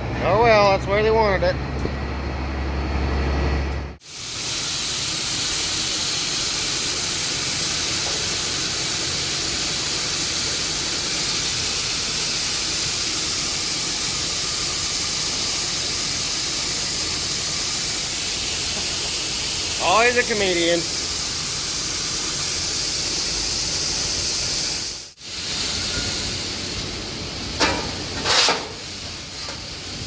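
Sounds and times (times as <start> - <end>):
vehicle engine hum: 0.0 - 4.0
corn pouring into pit: 4.0 - 26.6.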